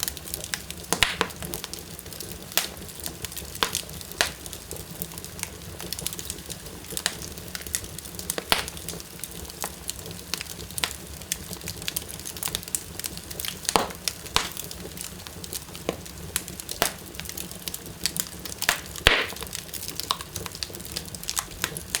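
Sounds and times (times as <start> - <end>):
fire crackling and popping: 0.0 - 22.0
fire rumbling: 0.0 - 22.0.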